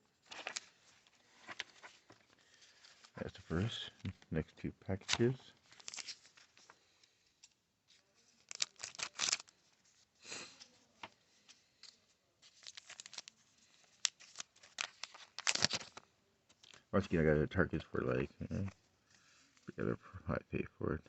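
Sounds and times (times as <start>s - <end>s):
foil wrapper crinkling and tearing: 5.7s - 6.6s, 8.3s - 9.6s, 12.5s - 16.1s.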